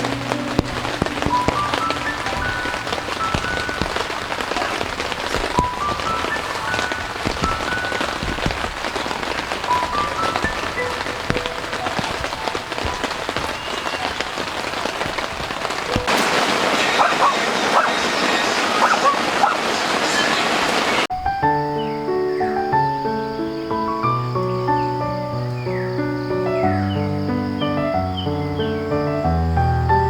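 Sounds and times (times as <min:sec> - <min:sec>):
raindrops ticking: 0:00.0 - 0:21.1
rain falling steadily: 0:00.0 - 0:30.0.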